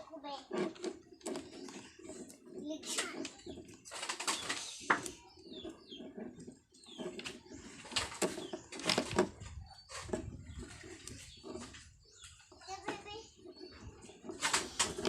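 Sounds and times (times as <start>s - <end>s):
hands clicking and rustling: 0.5s - 9.4s, 12.8s - 15.0s.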